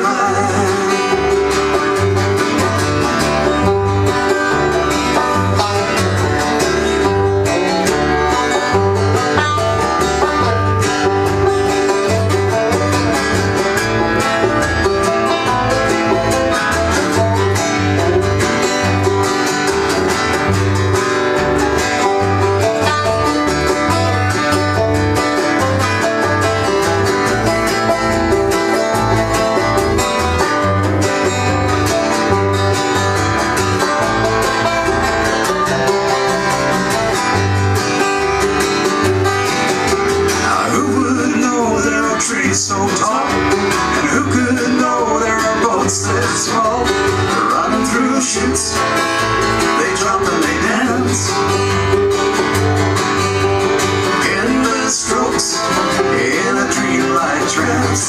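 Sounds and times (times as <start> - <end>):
bass line: 0.0 - 58.0
plucked acoustic strings: 0.0 - 58.0.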